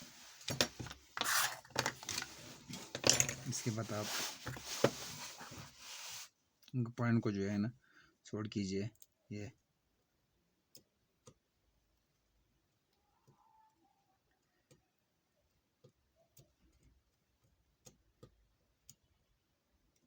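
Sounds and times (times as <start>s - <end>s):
faint clicks and ticks: 8.4s - 20.0s.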